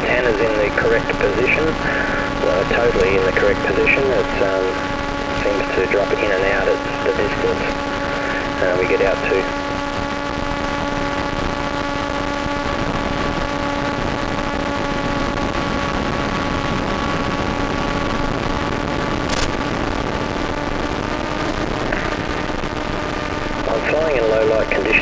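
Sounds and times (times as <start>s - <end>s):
short crackle: 1.8s - 8.6s, 12.5s - 24.2s.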